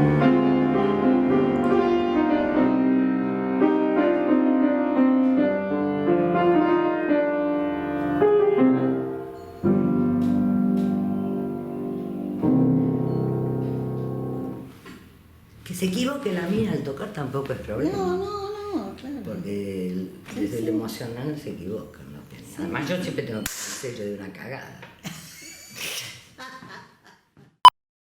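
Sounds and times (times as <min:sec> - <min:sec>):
piano music: 0:00.0 - 0:14.8.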